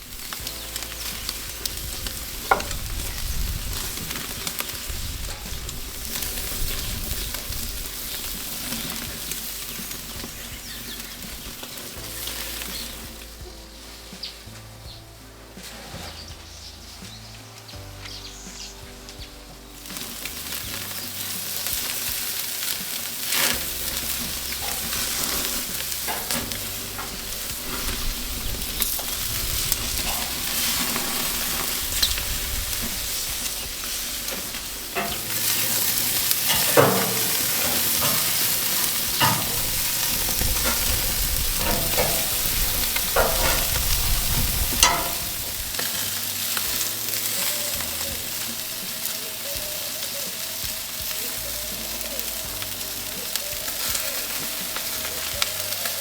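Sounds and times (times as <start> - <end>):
food sizzling in hot fat: 0.0 - 56.0
metal utensil scraping a pan: 19.8 - 51.3.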